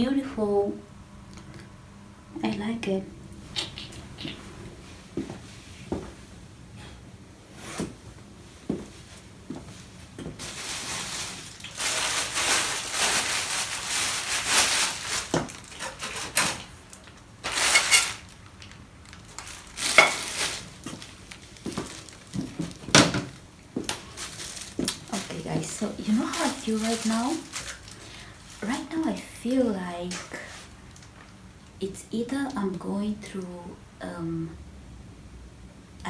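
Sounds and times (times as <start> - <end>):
bag rustling: 8.7 - 31.0.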